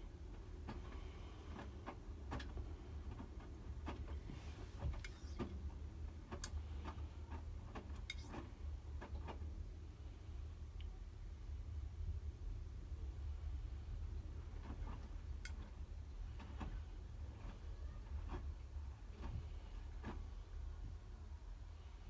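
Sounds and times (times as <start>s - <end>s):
washing machine humming: 0.0s - 10.6s, 11.2s - 22.0s
light clicks and ticks: 6.3s - 9.4s, 14.6s - 15.8s.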